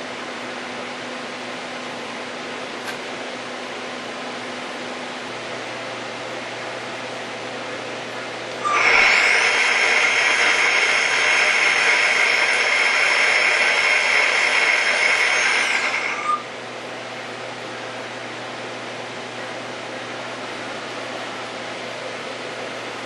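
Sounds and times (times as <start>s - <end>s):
thread mill whining: 7.6s - 16.9s.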